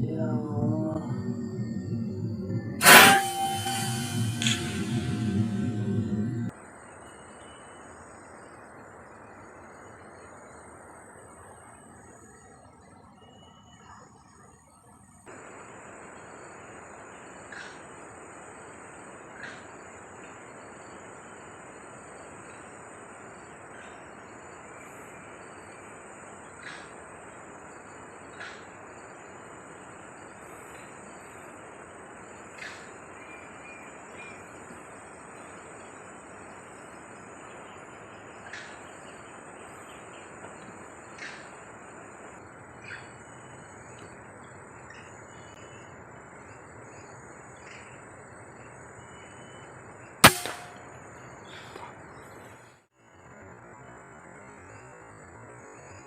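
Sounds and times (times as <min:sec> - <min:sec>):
insect drone: 0:00.0 - 0:12.6, 0:15.3 - 0:52.4, 0:53.0 - 0:56.0
outdoor ambient hiss: 0:00.0 - 0:56.0
air rifle shot: 0:50.2 - 0:50.8.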